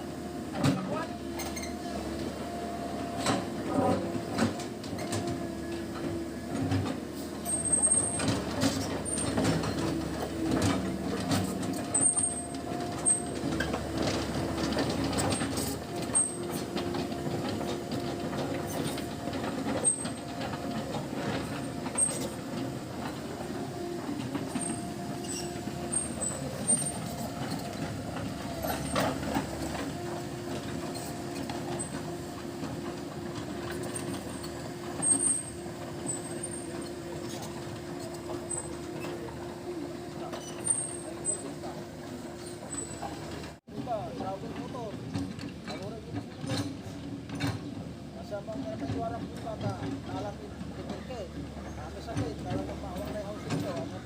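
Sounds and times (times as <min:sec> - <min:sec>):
excavator engine drone: 0:00.0 - 0:54.0
track clanks: 0:00.5 - 0:54.0
short high squeaks: 0:24.6 - 0:27.7.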